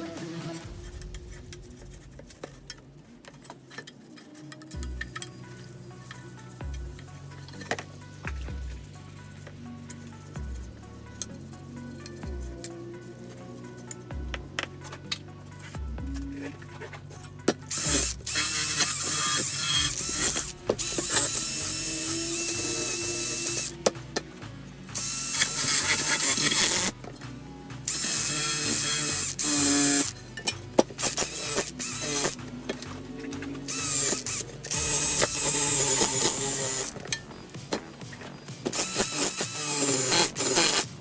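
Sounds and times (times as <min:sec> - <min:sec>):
background music: 0:00.0 - 0:41.0
power tool grinding: 0:16.5 - 0:41.0.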